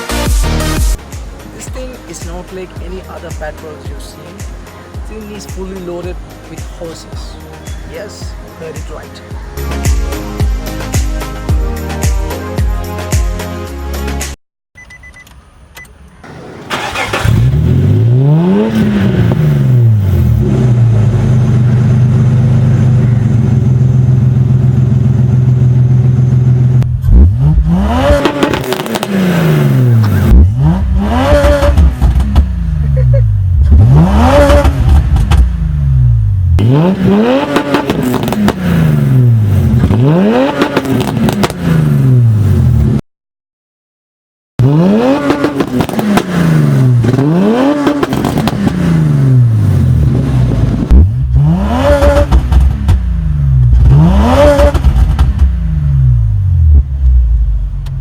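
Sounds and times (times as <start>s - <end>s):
loud car exhaust revving: 16.8s - 43.0s, 44.6s - 58.0s.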